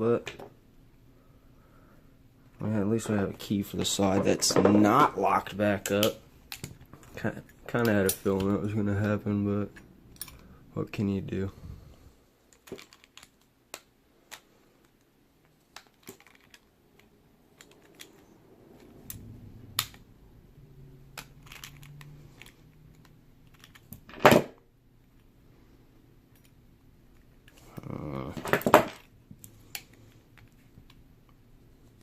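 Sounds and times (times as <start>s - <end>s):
lock parts clicking and tapping: 21.1s - 24.5s.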